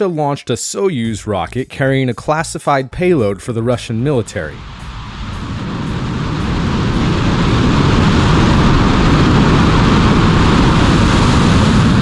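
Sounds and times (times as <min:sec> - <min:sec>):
rocket engines roaring: 0:03.9 - 0:12.0.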